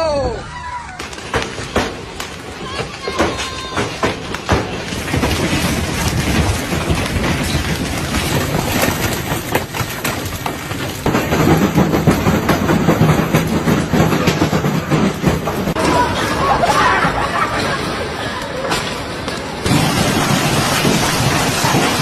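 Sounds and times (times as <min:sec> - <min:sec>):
hailstones striking hard surfaces: 0:01.0 - 0:22.0.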